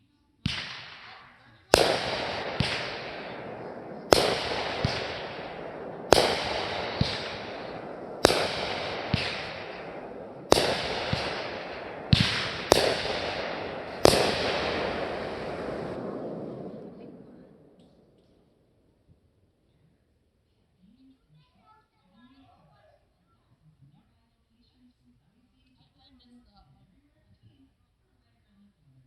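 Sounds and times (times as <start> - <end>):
fireworks bangs: 0.5 - 18.2
rumbling echo: 0.6 - 18.1.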